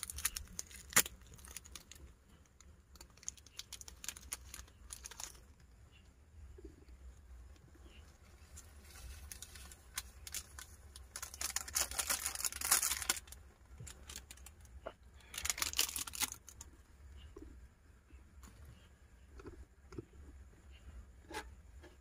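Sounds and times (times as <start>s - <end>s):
rustling and crinkling: 0.0s - 5.8s, 6.6s - 17.2s.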